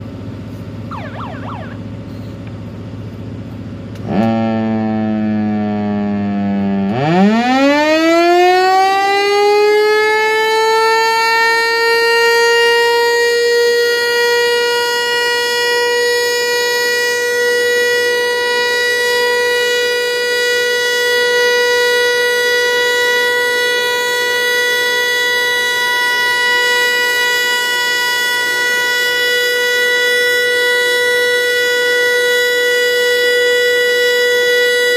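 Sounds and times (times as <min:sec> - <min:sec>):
low hum: 0:00.5 - 0:04.0
warning siren winding up: 0:00.9 - 0:01.9, 0:04.1 - 0:04.6.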